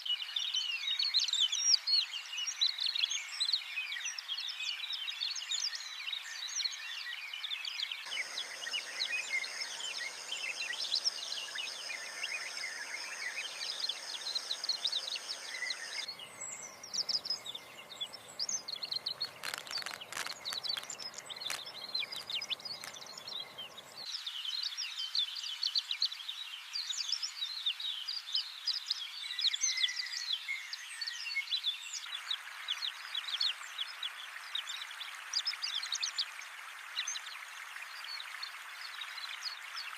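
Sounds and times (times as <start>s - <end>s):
birds chirping and calling: 8.1s - 24.1s
sharp clicks: 18.9s - 23.3s.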